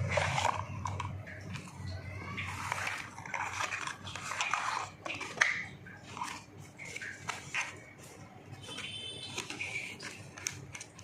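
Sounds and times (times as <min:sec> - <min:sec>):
packaging crinkling: 0:00.0 - 0:11.0.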